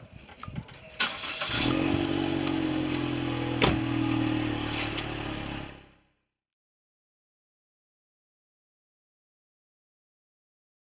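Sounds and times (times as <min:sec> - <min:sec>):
car engine idling: 0:01.1 - 0:06.0.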